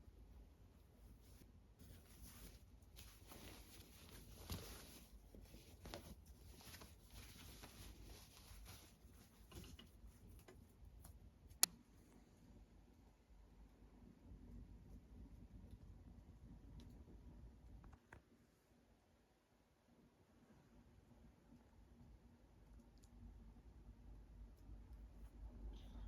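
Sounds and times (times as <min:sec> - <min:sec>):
faint rustles: 0:00.6 - 0:10.9.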